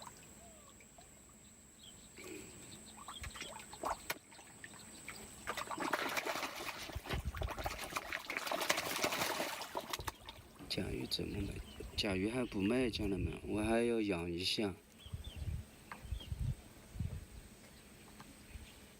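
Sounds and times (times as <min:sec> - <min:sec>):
water splashing: 0:00.0 - 0:01.1, 0:03.0 - 0:10.6.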